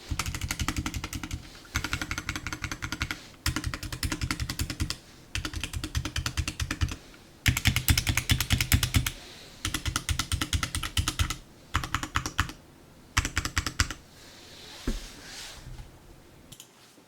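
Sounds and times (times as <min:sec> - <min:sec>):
mechanical keyboard typing: 0:00.1 - 0:12.6, 0:13.2 - 0:14.0.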